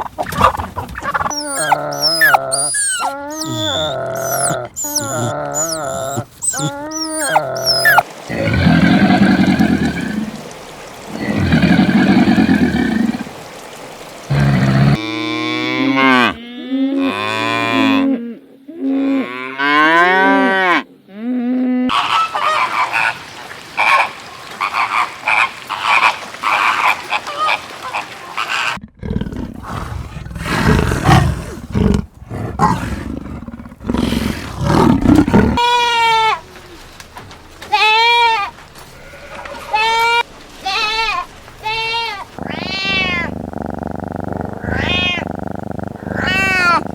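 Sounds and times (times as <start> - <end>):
other animal noises: 0.9 - 13.6, 28.7 - 35.8, 42.4 - 46.9
goat bleats: 1.3 - 8.0
cow mooing: 1.3 - 10.0, 42.4 - 46.9.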